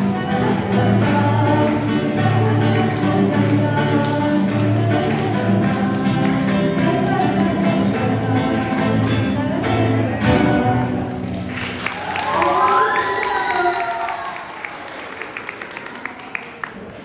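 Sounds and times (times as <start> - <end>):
plucked guitar: 0.0 - 11.6.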